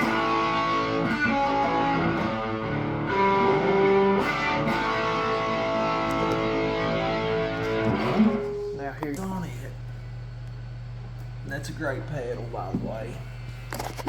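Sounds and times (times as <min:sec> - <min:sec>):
overdriven electric guitar: 0:00.0 - 0:08.8.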